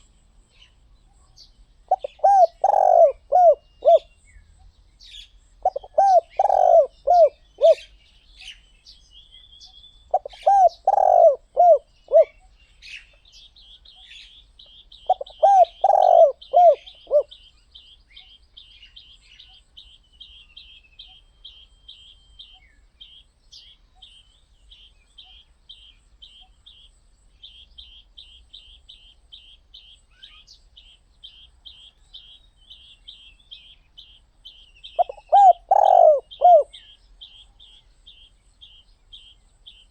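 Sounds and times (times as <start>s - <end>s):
small bird chirping: 0.0s - 39.9s
dove cooing: 1.9s - 4.2s, 5.6s - 8.0s, 10.1s - 12.5s, 15.0s - 17.4s, 34.9s - 37.0s.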